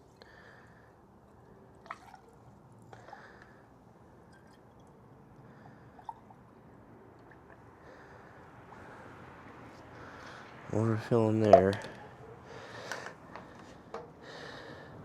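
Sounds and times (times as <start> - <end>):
coolant trickling and dripping: 0.1 - 9.0.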